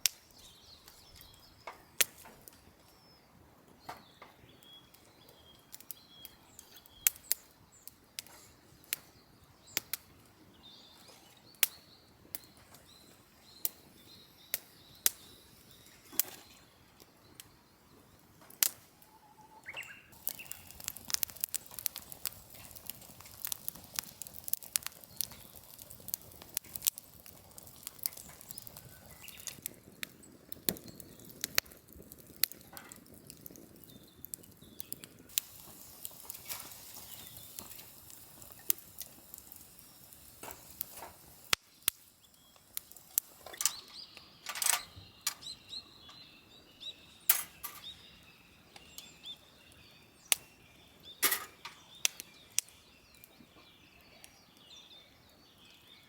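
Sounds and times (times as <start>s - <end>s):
wood fire crackling: 0.0s - 56.0s
faint bird call: 19.0s - 20.7s
hiss: 35.2s - 44.0s.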